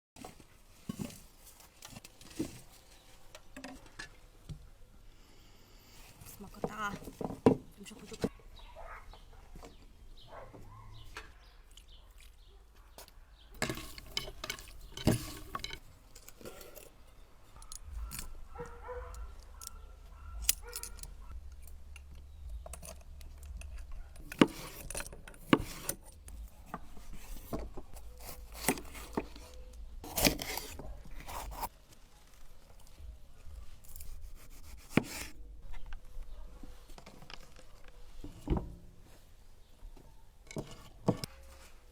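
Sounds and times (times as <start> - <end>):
handling clicks knocks and scrapes: 10.4 - 31.7, 32.8 - 38.8, 40.0 - 41.9
faint low hum: 17.4 - 25.0.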